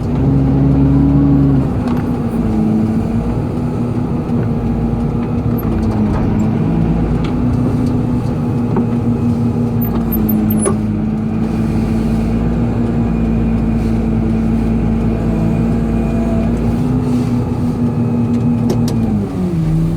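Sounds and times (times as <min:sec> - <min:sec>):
excavator diesel engine running: 0:00.0 - 0:19.9.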